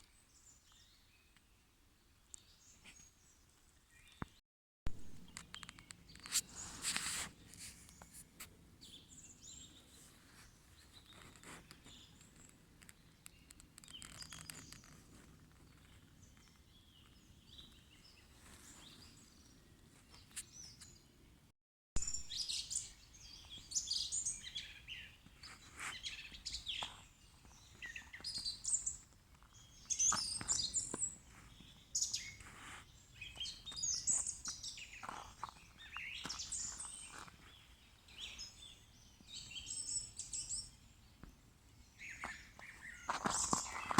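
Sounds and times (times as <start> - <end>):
birds chirping and singing: 41.9 - 43.9.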